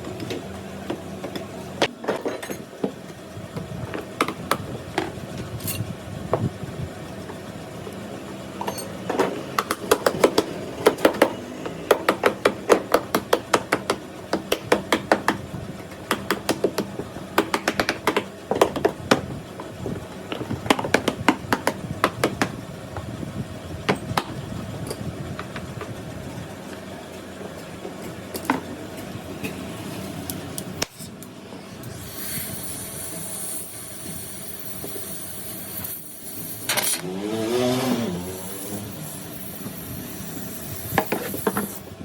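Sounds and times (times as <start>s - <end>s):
hard object tapping and knocking: 3.6s - 5.2s, 9.1s - 19.3s, 20.3s - 23.1s.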